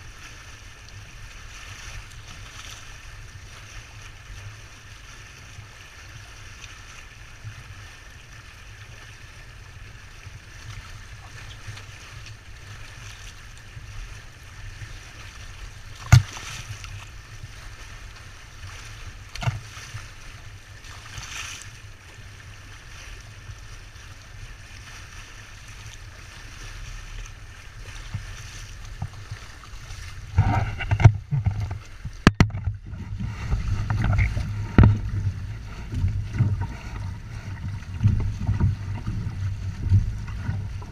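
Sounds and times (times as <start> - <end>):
water rushing: 0.0 - 40.9
sharp knocks: 30.4 - 32.8, 33.9 - 35.0
wind buffeting: 32.1 - 40.9.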